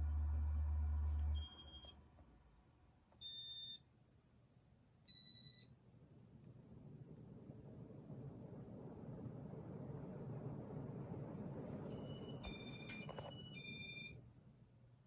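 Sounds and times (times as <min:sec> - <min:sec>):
steady low hum: 0:00.0 - 0:02.9.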